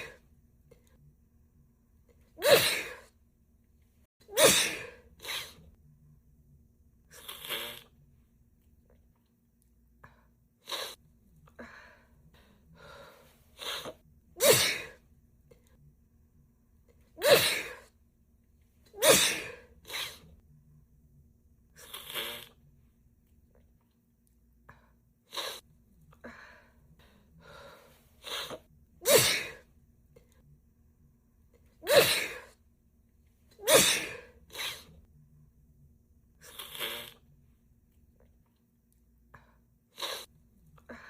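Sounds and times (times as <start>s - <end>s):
woman sneezing: 2.4s - 3.1s, 4.3s - 5.6s, 13.6s - 15.0s, 17.2s - 17.9s, 18.9s - 20.2s, 28.2s - 29.6s, 31.8s - 32.6s, 33.6s - 34.9s.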